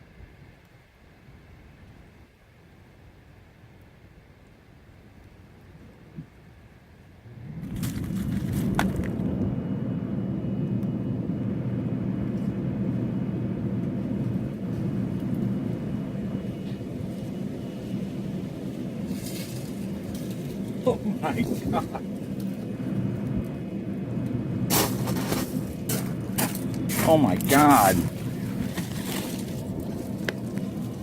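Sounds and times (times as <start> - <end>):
motor-driven machine humming: 7.4 - 31.0.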